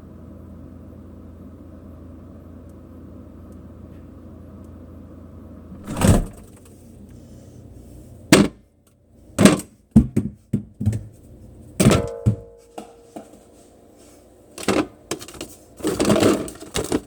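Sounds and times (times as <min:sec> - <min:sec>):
steady low hum: 0:00.0 - 0:17.0
objects knocking and clattering: 0:09.4 - 0:11.2, 0:11.8 - 0:13.5, 0:14.6 - 0:17.0
heavy thump: 0:11.8 - 0:13.0.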